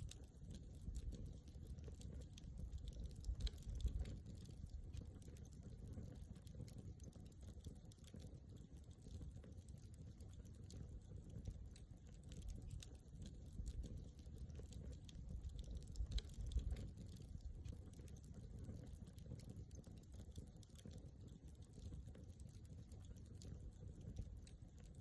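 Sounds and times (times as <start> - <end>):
low steady rumble: 0.0 - 6.8
campfire crackling: 0.0 - 25.0
fire pops and ticks: 0.0 - 25.0.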